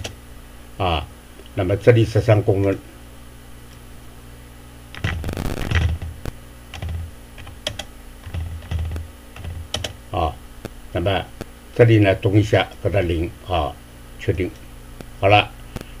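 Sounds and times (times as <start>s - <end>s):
keyboard typing: 5.0s - 10.0s.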